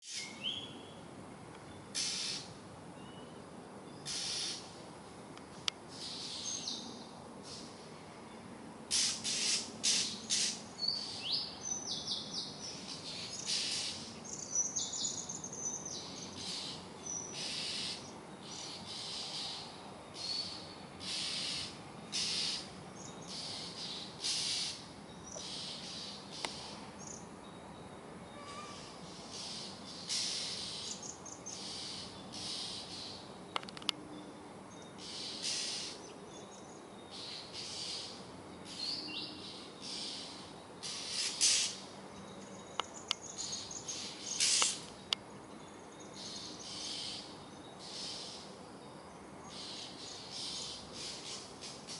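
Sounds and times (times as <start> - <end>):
bird harsh raspy calls: 1.9 - 3.2, 4.0 - 4.8, 5.9 - 7.7, 8.9 - 27.2, 28.4 - 33.3, 35.0 - 36.1, 37.1 - 41.8, 43.2 - 44.9, 46.2 - 48.5, 49.5 - 51.9.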